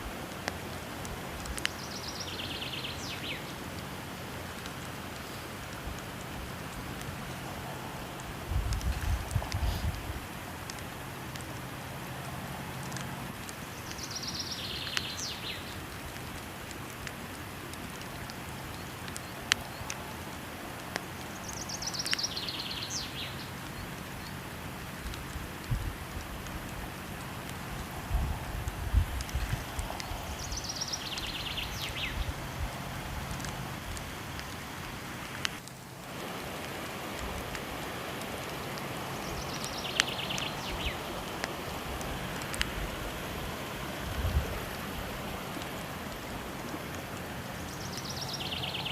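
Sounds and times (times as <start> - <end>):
rush of falling water: 0.0 - 48.9
wood fire crackling pops: 0.1 - 2.0, 3.0 - 14.1, 14.8 - 22.4, 23.5 - 48.5
songbird trill: 1.6 - 3.6, 13.7 - 15.9, 21.3 - 24.4, 30.0 - 32.4, 39.0 - 41.4, 47.5 - 48.9.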